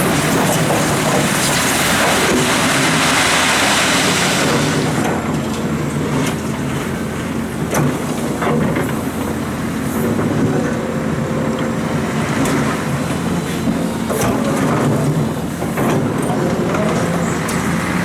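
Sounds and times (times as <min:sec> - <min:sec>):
bucket knocking and gravel clattering: 0:00.0 - 0:05.1
excavator diesel engine running: 0:00.0 - 0:18.0.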